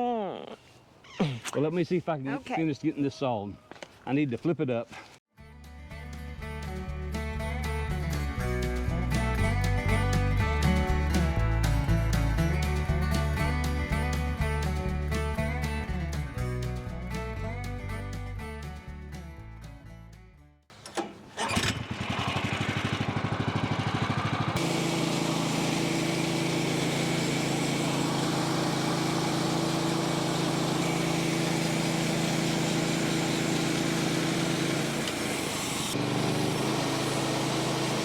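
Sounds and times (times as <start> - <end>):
engine starting and revving: 20.8 - 38.0.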